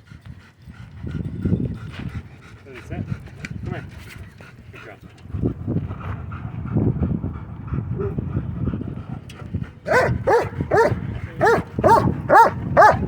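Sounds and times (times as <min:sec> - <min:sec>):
dog yelping barks: 0:09.9 - 0:13.0.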